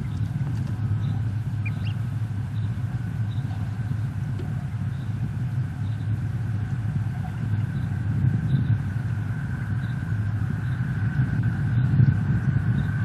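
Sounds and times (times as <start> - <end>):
ducklings peeping: 0.0 - 8.8
low rumble: 0.0 - 13.0.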